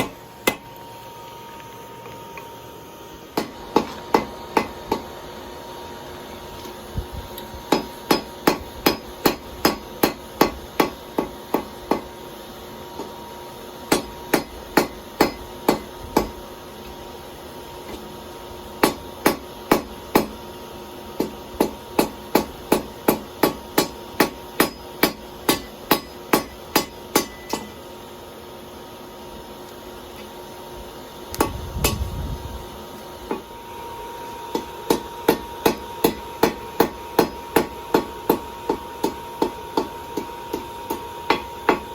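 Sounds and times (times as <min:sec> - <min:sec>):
hammer striking steel on anvil: 0:00.0 - 0:00.7, 0:03.4 - 0:05.1, 0:07.7 - 0:12.1, 0:13.9 - 0:16.4, 0:18.8 - 0:20.4, 0:21.2 - 0:27.8, 0:31.4 - 0:32.0, 0:34.5 - 0:41.9.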